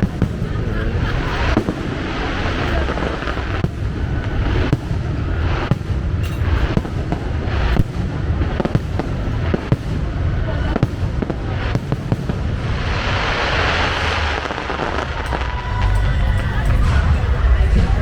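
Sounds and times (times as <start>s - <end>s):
fireworks bangs: 0.0s - 18.0s
low rumble: 13.2s - 18.0s.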